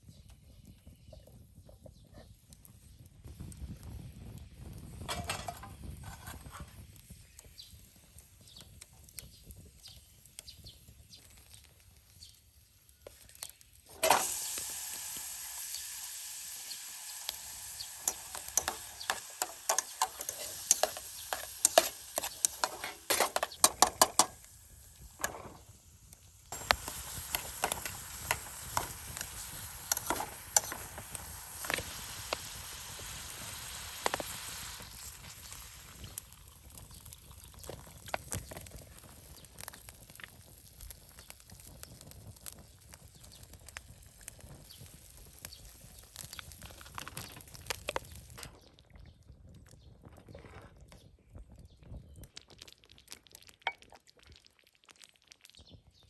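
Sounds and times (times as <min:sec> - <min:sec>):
food sizzling in a hot pan: 0:04.0 - 0:48.4.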